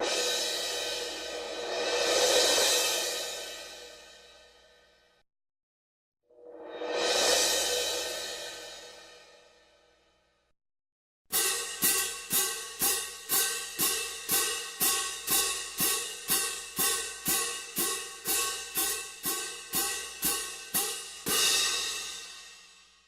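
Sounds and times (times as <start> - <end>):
cymbal struck in even beat: 0.0 - 4.4, 11.3 - 22.8.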